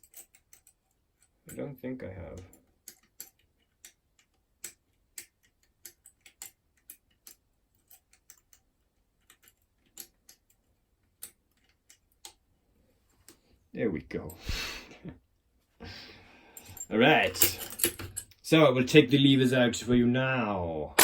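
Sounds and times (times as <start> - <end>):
faint metallic lock picking clicks: 0.0 - 1.6, 2.3 - 12.4.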